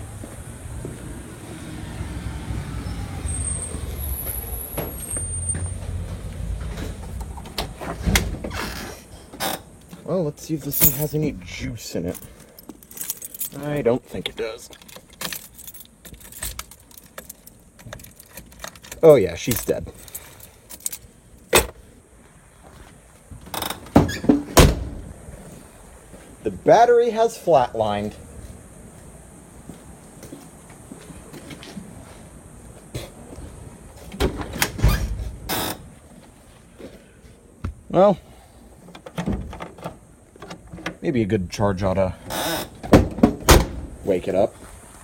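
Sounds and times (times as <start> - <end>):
motor vehicle engine rumbling: 0.0 - 26.6
truck door clunks: 23.8 - 25.1, 42.8 - 44.0.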